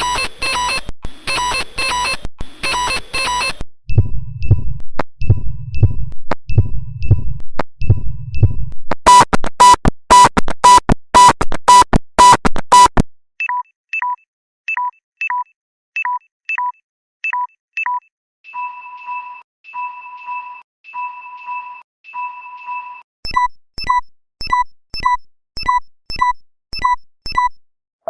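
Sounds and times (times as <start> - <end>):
low electronic throb: 3.9 - 8.9
two-tone beeps: 9.1 - 20.4.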